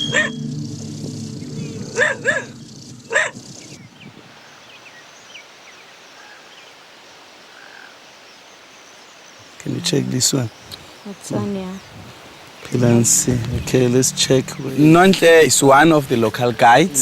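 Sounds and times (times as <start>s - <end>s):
faint high chirps: 0.0s - 3.8s, 12.6s - 17.0s
low steady drone: 0.0s - 3.8s, 9.6s - 10.4s, 12.6s - 17.0s
dog barking: 2.0s - 2.5s, 3.1s - 3.4s.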